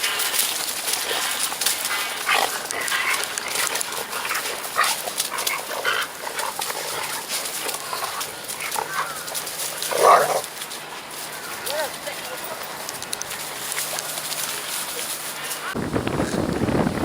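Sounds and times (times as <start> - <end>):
steady hiss: 0.0 - 17.0.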